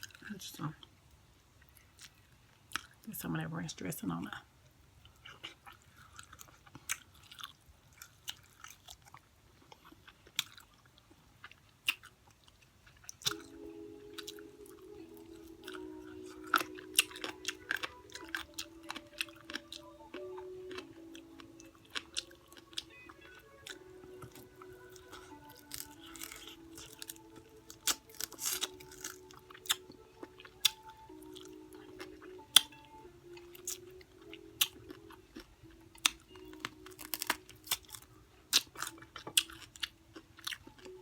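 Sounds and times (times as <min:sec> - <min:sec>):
chewing crispy fried chicken: 0:01.6 - 0:03.1, 0:05.0 - 0:41.0
soft background music: 0:03.1 - 0:04.4, 0:13.2 - 0:41.0.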